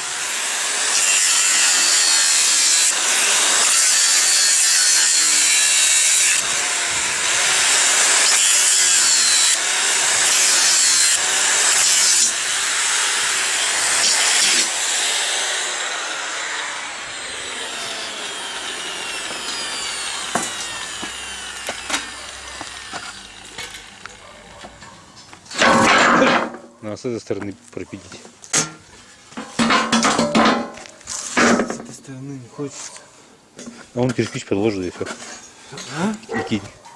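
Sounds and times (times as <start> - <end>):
angle grinder cutting steel: 0.0 - 24.2.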